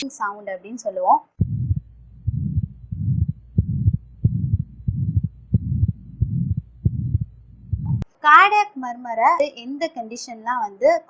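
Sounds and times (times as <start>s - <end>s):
heartbeat with whooshing murmur: 1.4s - 8.1s.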